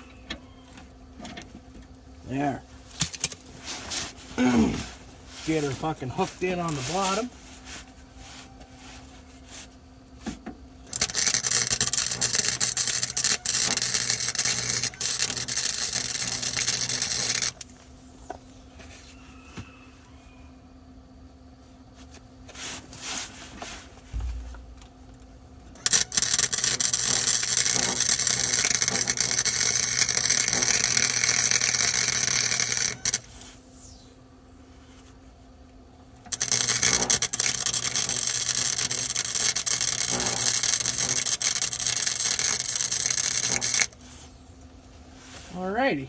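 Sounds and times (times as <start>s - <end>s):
arc welding crackling: 4.9s - 7.4s, 10.8s - 18.5s, 24.2s - 34.4s, 36.2s - 44.4s.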